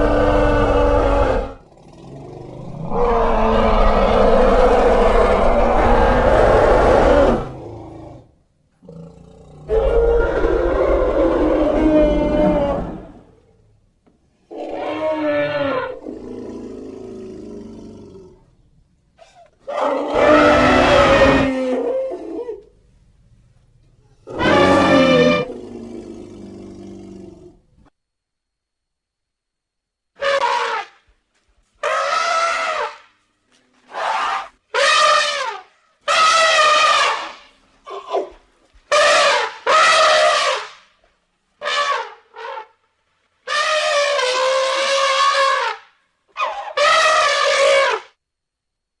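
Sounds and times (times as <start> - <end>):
animal roars: 0.0 - 13.5, 14.5 - 18.6, 19.2 - 22.6, 23.8 - 27.8
person imitating trumpeting calls: 24.4 - 25.5.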